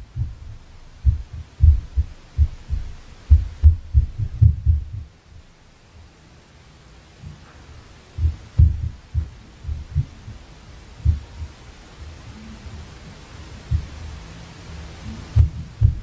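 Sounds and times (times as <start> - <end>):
dull thuds through ceiling: 0.0 - 5.6, 8.2 - 10.4, 15.2 - 16.0
steady low hum: 0.0 - 16.0.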